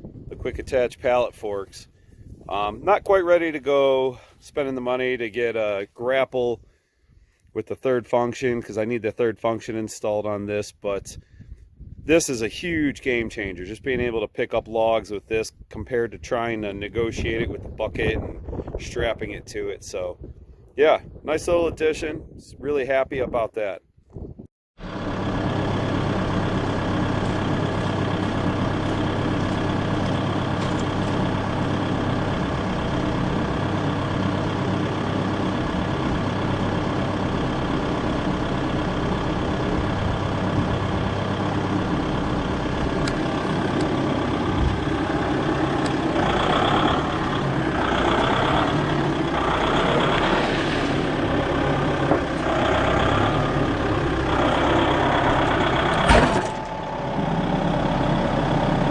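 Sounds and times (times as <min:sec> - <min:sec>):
engine running: 0:24.8 - 0:58.9.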